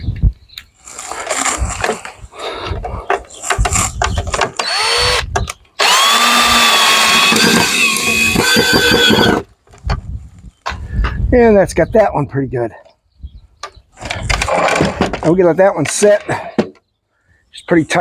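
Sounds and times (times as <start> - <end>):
cordless drill whining: 4.5 - 9.5.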